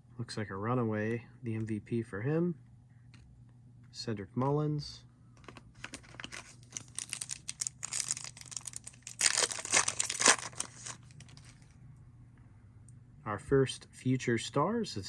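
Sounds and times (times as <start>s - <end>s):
cards handled: 5.4s - 11.7s
foil wrapper tearing and crinkling: 6.0s - 11.6s.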